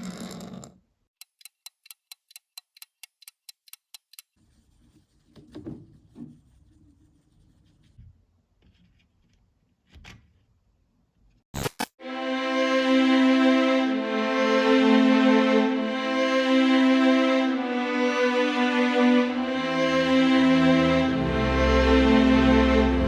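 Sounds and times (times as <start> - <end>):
small mechanism clicking rapidly: 1.2 - 4.4.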